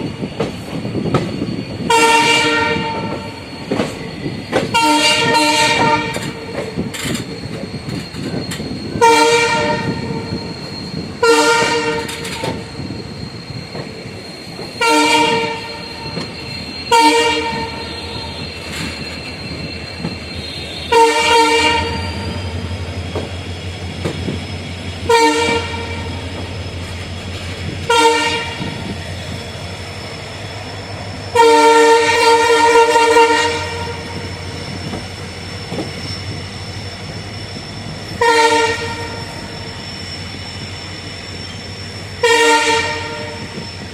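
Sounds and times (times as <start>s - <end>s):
train running noise: 0.0s - 43.9s
locomotive horn blasts: 1.9s - 3.2s, 4.7s - 6.4s, 9.0s - 10.2s, 11.2s - 12.3s, 14.8s - 15.8s, 16.9s - 18.2s, 20.9s - 22.2s, 25.0s - 26.2s, 27.8s - 28.8s, 31.3s - 34.2s, 38.2s - 39.3s, 42.2s - 43.5s.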